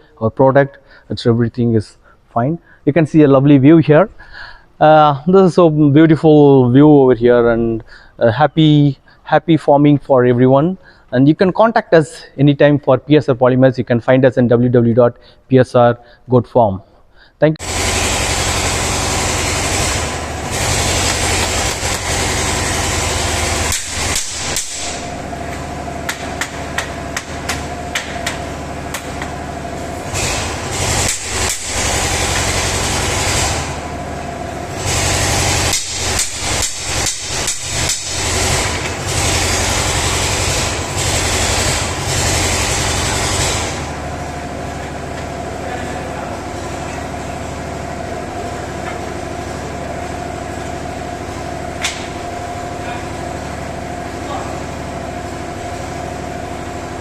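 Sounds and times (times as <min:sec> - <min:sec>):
steady machine hum: 0:17.6 - 0:57.0
rapid hammering knocks: 0:26.1 - 0:29.3.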